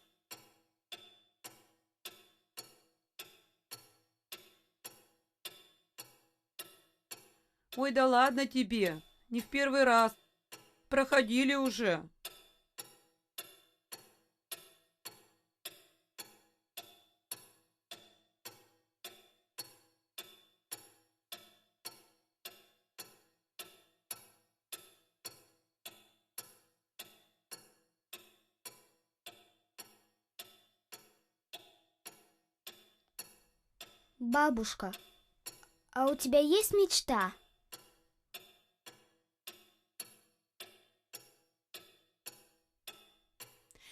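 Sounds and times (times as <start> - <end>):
faint ringing ticks: 34.8 - 36.2.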